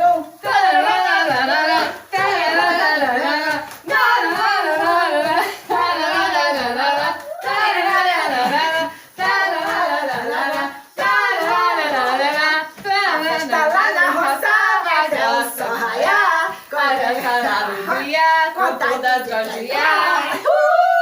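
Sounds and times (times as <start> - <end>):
voices singing unaccompanied: 0.0 - 21.0
singers breathing: 8.9 - 9.2.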